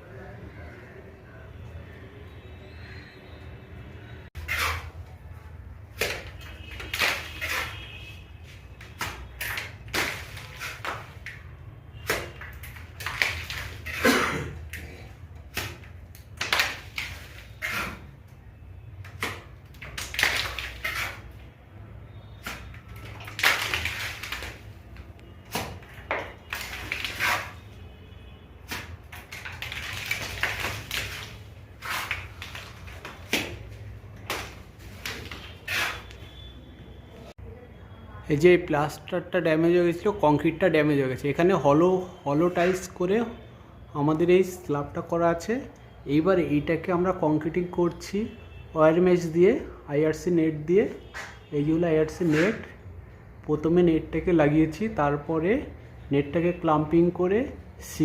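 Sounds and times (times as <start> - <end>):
hand tools scraping mortar: 4.4 - 4.9, 6.8 - 7.8, 16.4 - 18.1, 19.9 - 21.3, 26.5 - 27.6, 28.7 - 33.2, 34.9 - 36.2.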